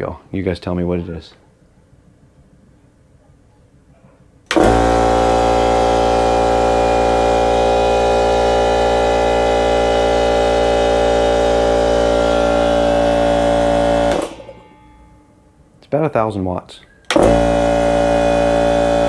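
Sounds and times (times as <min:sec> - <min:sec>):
air compressor running: 0:04.5 - 0:15.4, 0:17.1 - 0:19.0.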